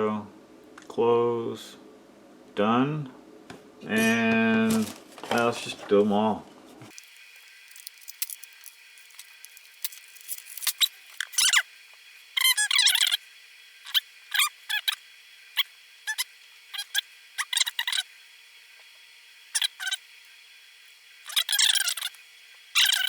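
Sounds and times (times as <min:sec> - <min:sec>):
high-pitched squeaky chirps: 0:10.3 - 0:11.7, 0:12.4 - 0:13.2, 0:13.8 - 0:15.0, 0:15.6 - 0:18.1, 0:19.5 - 0:20.0, 0:21.2 - 0:22.2, 0:22.8 - 0:23.0.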